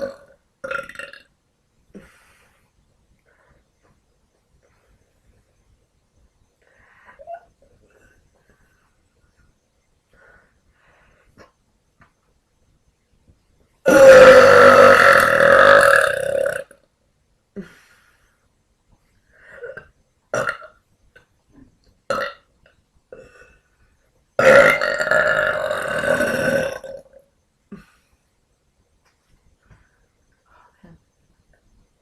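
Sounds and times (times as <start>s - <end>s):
woman belching: 0.0s - 1.2s, 13.9s - 16.7s, 19.6s - 20.7s, 24.4s - 27.2s.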